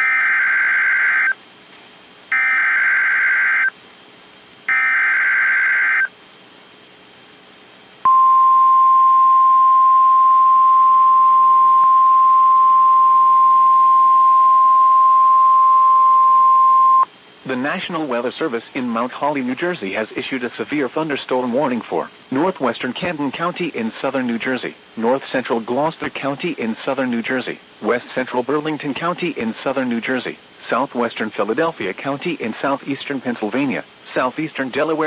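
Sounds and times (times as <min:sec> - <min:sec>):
steady single-pitch alarm tone: 0:00.0 - 0:01.4, 0:02.3 - 0:03.7, 0:04.7 - 0:06.1, 0:08.1 - 0:17.1
digital header tone bursts: 0:02.3 - 0:03.7, 0:04.7 - 0:06.1.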